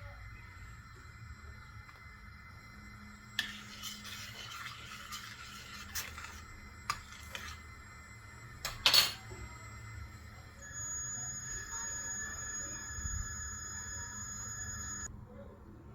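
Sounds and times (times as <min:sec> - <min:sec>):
faint scraping: 0:03.4 - 0:07.6
utensils clinking on dishes: 0:08.7 - 0:09.3.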